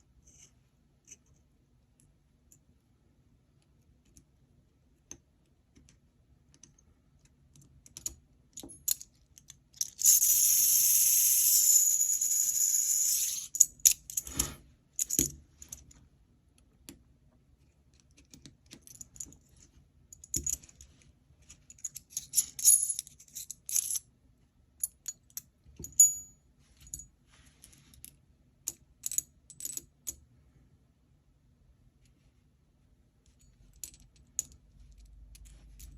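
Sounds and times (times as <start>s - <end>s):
fidget toy gears whirring: 9.9s - 13.6s.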